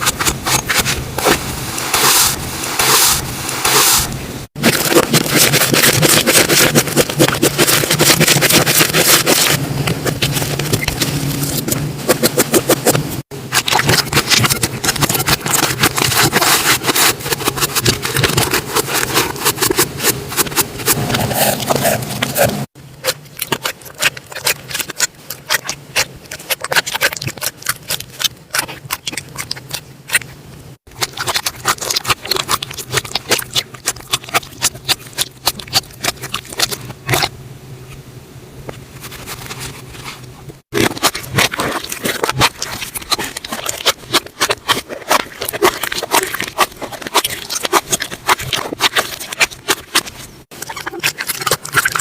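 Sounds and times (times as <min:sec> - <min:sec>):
slime squished by hand: 0:30.9 - 0:37.3, 0:40.7 - 0:52.0.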